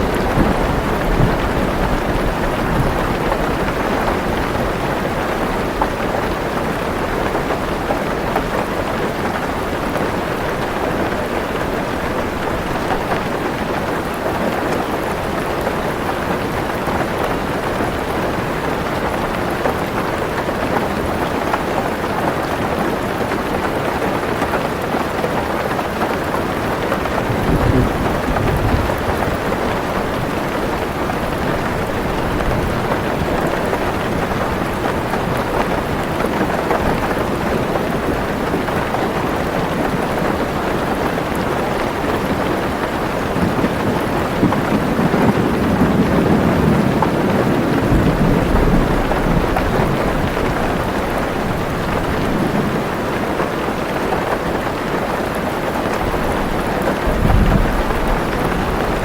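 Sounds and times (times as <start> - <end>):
low rumble of thunder: 0.0 - 5.9, 27.0 - 38.4, 43.1 - 53.3, 56.0 - 59.0
heavy rain on car roof: 0.0 - 59.0.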